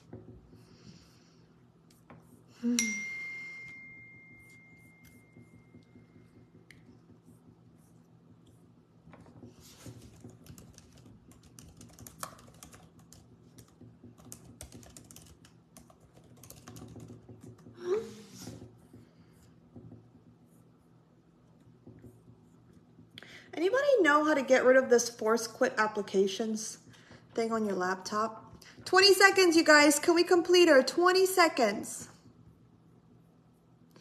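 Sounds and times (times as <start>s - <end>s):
single-tone chime: 2.8s - 5.2s
laptop keyboard typing: 8.4s - 17.8s.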